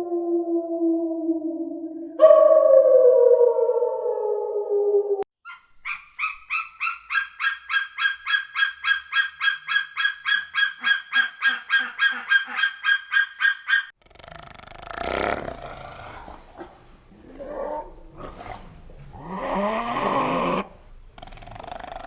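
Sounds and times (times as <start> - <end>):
waterfowl calling: 5.5 - 13.9.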